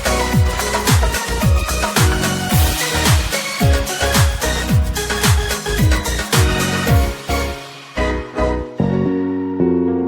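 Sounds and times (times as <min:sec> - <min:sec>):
kick drum beat: 0:00.0 - 0:07.2
electronic music: 0:00.0 - 0:09.7.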